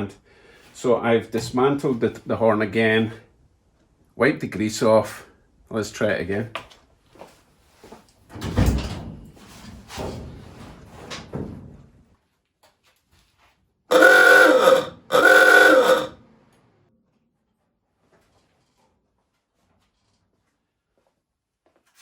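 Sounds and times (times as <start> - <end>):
electric horn blasts: 13.9 - 16.2
rough noisy bursts: 13.9 - 16.2.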